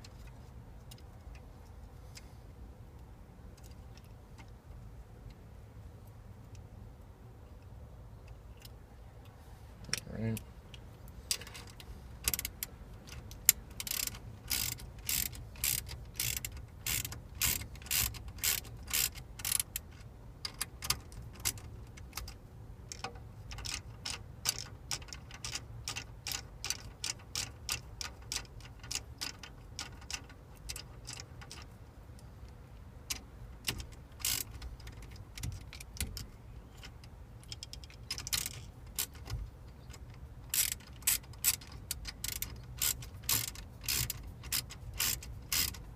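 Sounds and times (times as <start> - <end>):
hand ratchet clicking: 11.3 - 31.8, 33.1 - 45.9.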